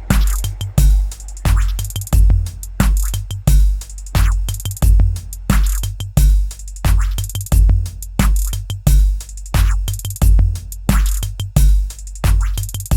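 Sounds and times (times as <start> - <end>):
electronic music: 0.0 - 6.3
hi-hat clicks: 0.0 - 12.9
kick drum: 0.0 - 12.9.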